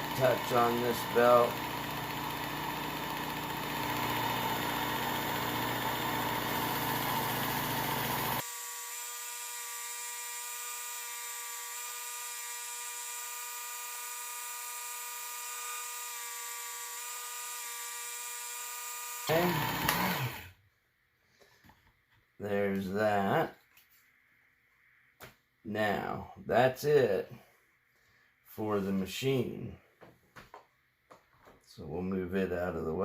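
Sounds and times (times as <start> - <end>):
belt sharpener motor whining: 0.0 - 20.5.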